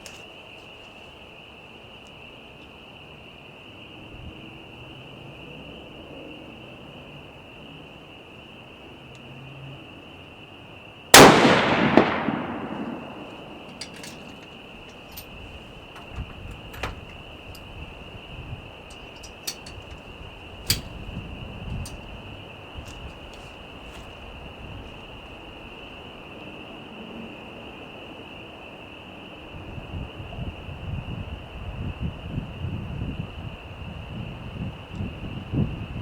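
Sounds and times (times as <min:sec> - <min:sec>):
insects trilling: 0:00.0 - 0:36.0
pistol shot with echo: 0:11.2 - 0:14.3
bullet clanging on steel plate: 0:11.2 - 0:17.8, 0:18.9 - 0:21.1
light clicks and knocks: 0:13.3 - 0:17.8, 0:18.9 - 0:21.1.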